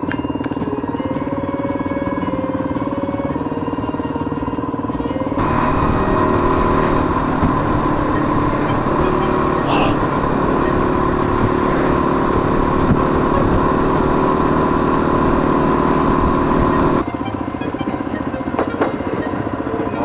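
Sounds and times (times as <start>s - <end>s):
motorcycle engine running: 4.7s - 17.0s.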